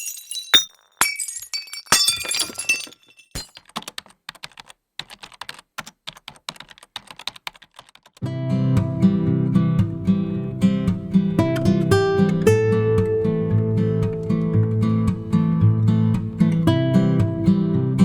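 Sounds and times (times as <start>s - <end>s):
rapid irregular clicking: 3.6s - 8.2s
acoustic guitar strumming: 8.2s - 18.0s.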